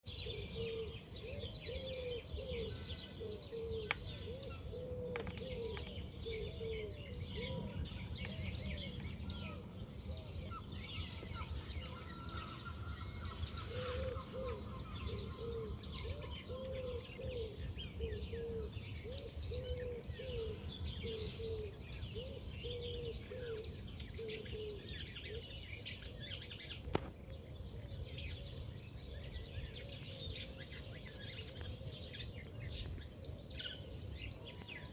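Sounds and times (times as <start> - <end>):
birds chirping and twittering: 0.0 - 34.9
bird low arched notes: 0.1 - 25.5.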